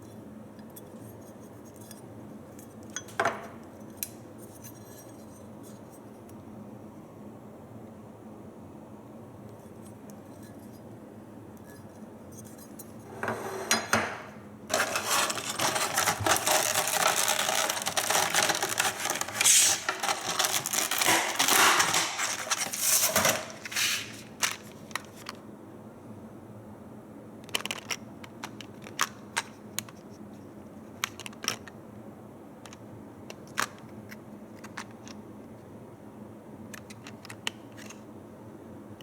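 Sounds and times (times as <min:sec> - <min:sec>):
packaging rustling: 0:14.7 - 0:25.3.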